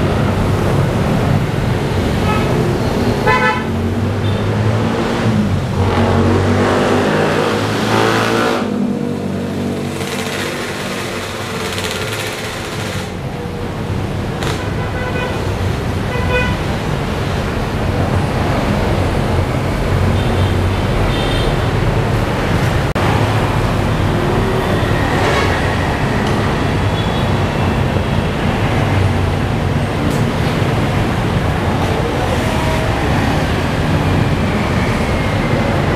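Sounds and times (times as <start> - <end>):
road traffic engines: 0.0 - 35.9
car horns tooting: 3.2 - 3.7.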